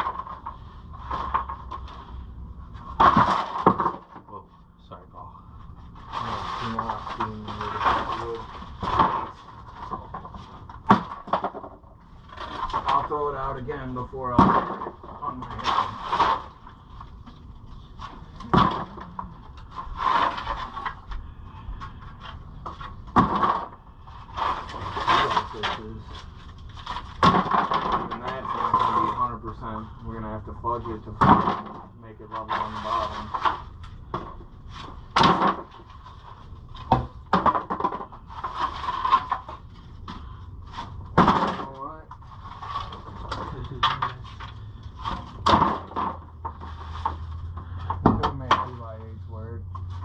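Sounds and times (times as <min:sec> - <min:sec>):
wood crunching and knocking: 0:00.0 - 0:02.1, 0:02.7 - 0:04.4, 0:05.9 - 0:29.9, 0:30.7 - 0:50.0
wood scraping clatter: 0:00.0 - 0:04.5, 0:05.6 - 0:50.0.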